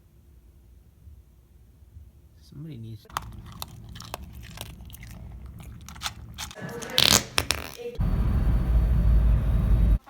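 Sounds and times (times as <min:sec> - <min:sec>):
dog claws clicking on hard floor: 0:03.1 - 0:07.9
loud low rumble: 0:08.0 - 0:10.0.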